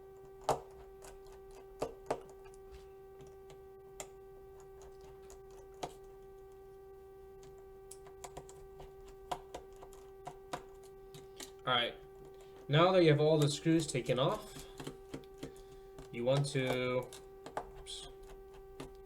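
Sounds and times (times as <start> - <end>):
faint steady hum: 0.0 - 19.0
screwdriver clicking on tiny screws: 0.4 - 2.5, 7.4 - 11.6, 12.2 - 19.0.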